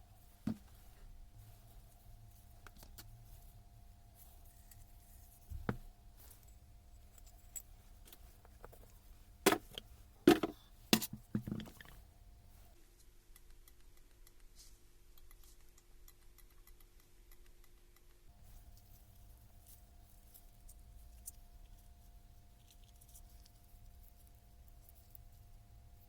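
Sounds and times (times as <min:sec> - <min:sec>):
tools handled on workbench: 0:00.4 - 0:00.7, 0:09.5 - 0:11.9.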